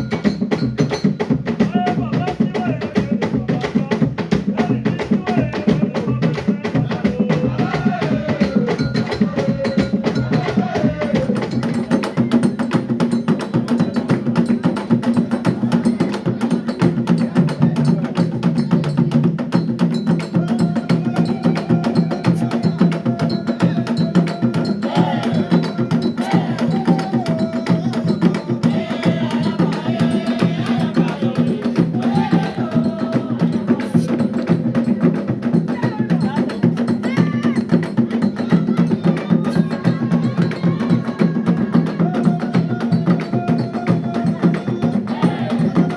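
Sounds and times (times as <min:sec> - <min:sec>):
fast drums and percussion: 0:00.0 - 0:45.9
voices singing: 0:01.6 - 0:45.9.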